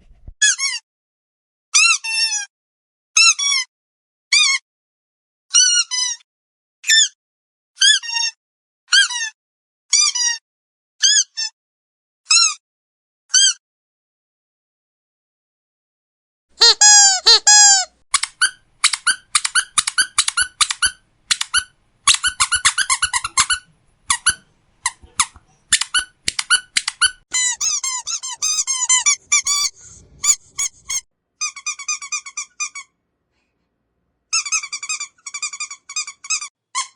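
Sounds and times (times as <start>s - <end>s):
squeaky dog toy squeaking: 0.4s - 0.8s, 1.8s - 2.5s, 5.5s - 6.2s, 7.8s - 10.4s, 11.0s - 11.5s, 12.3s - 12.6s, 16.6s - 33.0s, 34.3s - 36.9s.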